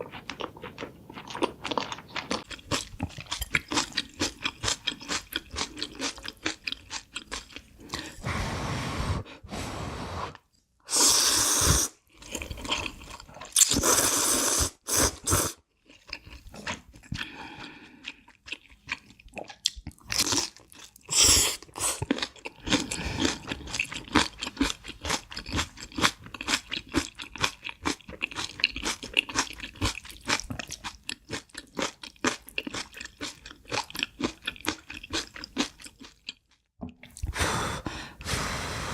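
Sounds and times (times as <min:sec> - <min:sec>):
chewing crisp food: 0:00.0 - 0:08.2, 0:12.1 - 0:14.0, 0:15.7 - 0:37.3.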